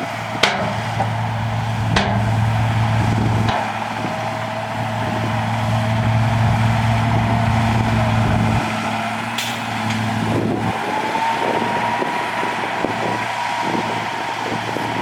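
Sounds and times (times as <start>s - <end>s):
diesel machinery engine running: 0.0s - 15.0s
faint whine: 0.3s - 11.0s.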